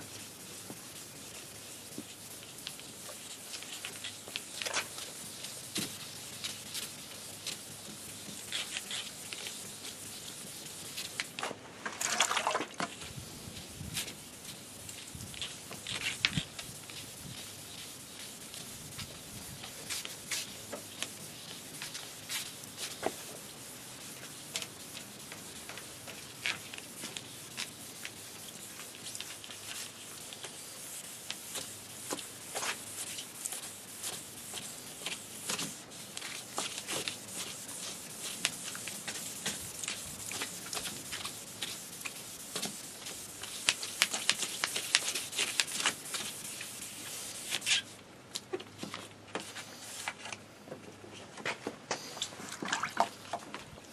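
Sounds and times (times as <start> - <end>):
sandpaper rubbing on plastic: 0.0 - 11.4, 12.9 - 47.9.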